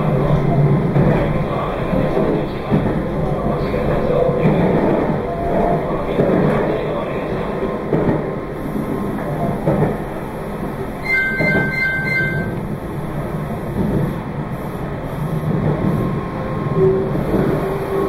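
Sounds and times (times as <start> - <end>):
train wheels rumbling on rail: 0.0 - 18.0
high ringing tone: 11.0 - 12.6.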